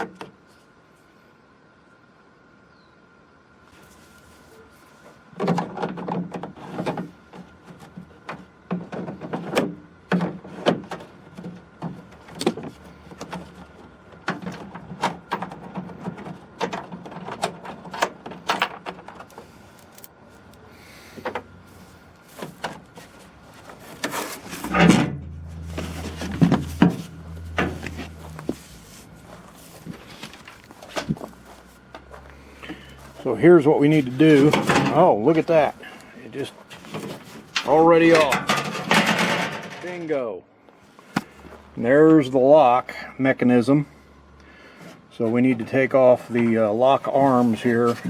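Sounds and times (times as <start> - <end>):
low steady hum: 0.1 - 45.3
hand tools and hardware clattering: 5.4 - 20.1, 22.3 - 40.1.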